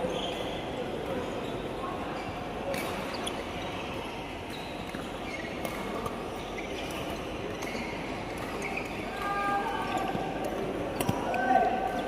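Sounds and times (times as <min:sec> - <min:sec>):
shoes squeaking on court floor: 0:00.0 - 0:09.2.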